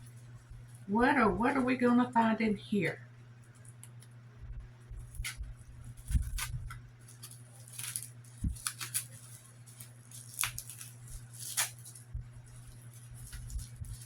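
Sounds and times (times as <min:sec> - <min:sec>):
steady low hum: 0:00.0 - 0:14.0
packaging crinkling and rustling: 0:05.0 - 0:14.0.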